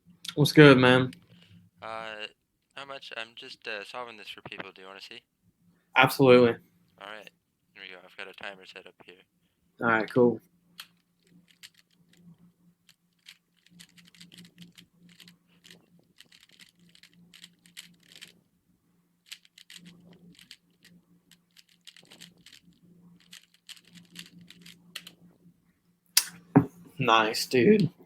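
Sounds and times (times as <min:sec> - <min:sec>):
puzzle cube plastic clicking: 0:10.8 - 0:12.3, 0:12.9 - 0:18.4, 0:19.2 - 0:25.2.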